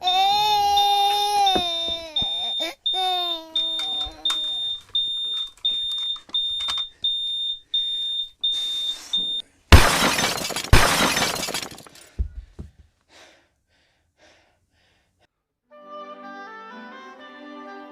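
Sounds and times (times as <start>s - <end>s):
smoke alarm beeping: 2.1s - 9.4s
loud crashes with breaking debris: 9.7s - 12.0s.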